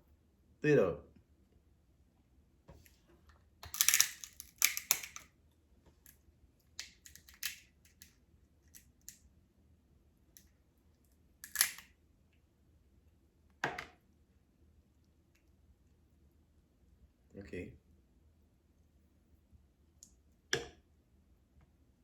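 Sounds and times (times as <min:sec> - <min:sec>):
eating and food handling noises: 0:02.7 - 0:09.2.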